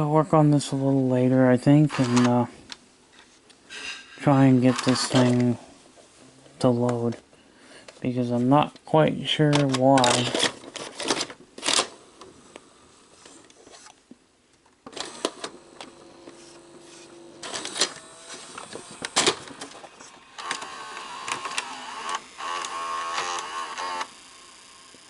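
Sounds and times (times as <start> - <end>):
loading motor whirring: 4.6 - 5.5, 14.8 - 25.0
gears clicking and clacking: 14.9 - 24.1.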